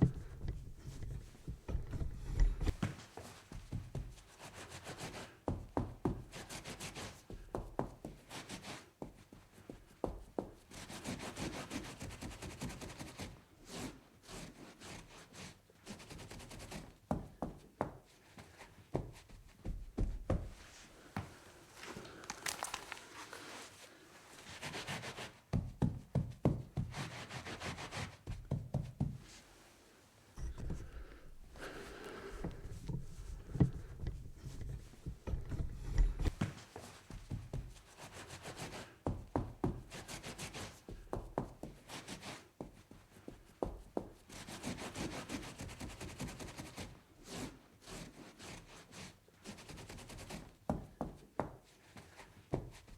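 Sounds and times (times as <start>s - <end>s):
scrubbing on table top: 21.7s - 25.2s.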